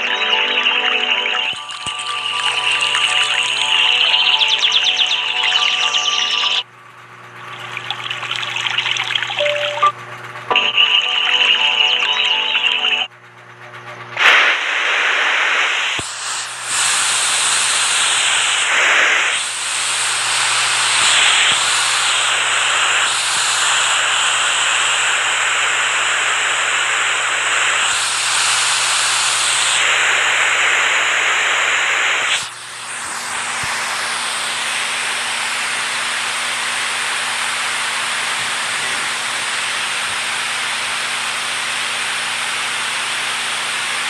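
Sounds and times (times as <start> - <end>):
rushing water hissing: 1.4 - 6.6.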